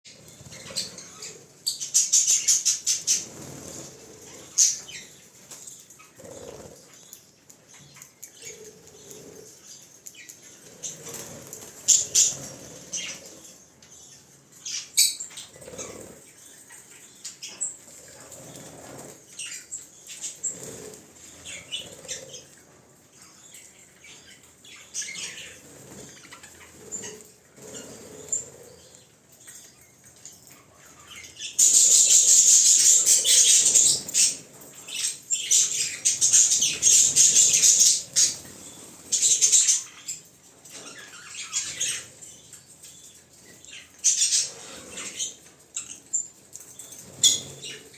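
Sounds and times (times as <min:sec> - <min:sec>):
birds fluttering wings: 0:02.8 - 0:07.1, 0:10.6 - 0:13.6, 0:17.9 - 0:22.6.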